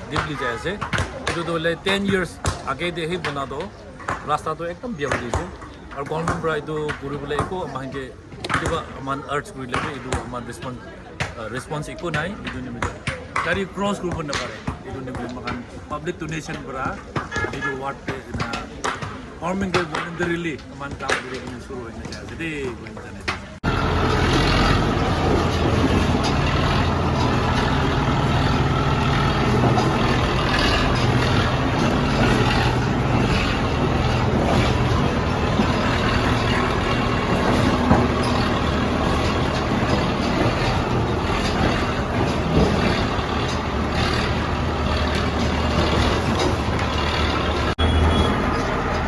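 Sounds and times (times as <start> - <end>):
irregular clattering: 22.8 - 47.8
heavy machinery engine running: 23.6 - 49.0.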